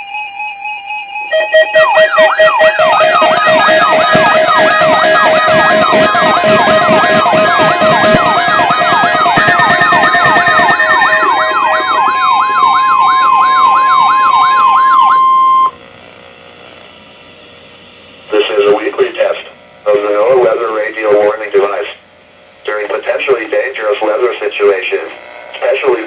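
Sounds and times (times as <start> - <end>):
steady high tone: 0.0 - 15.8
warbling alert alarm: 0.0 - 15.8
beeping tones: 1.3 - 15.8.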